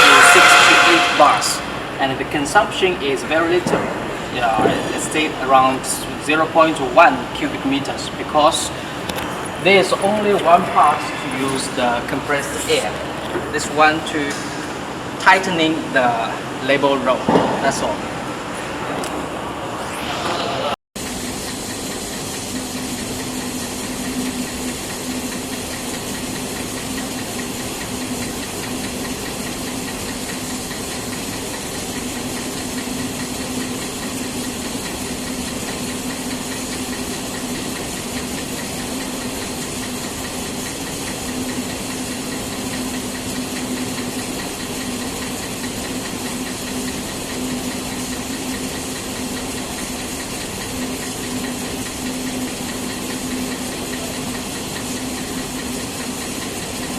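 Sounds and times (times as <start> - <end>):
machinery hum: 0.0 - 25.7.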